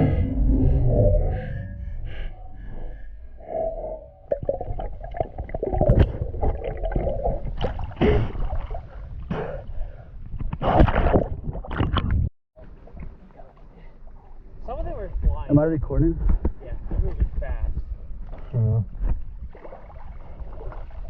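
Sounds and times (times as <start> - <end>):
water gurgling and splashing: 4.3 - 9.6, 10.6 - 13.2, 19.5 - 21.0.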